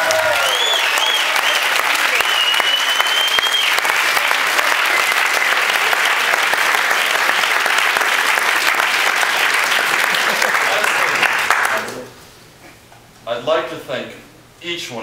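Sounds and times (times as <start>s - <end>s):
high held whistle: 0.0s - 3.9s
audience applauding: 0.0s - 12.1s.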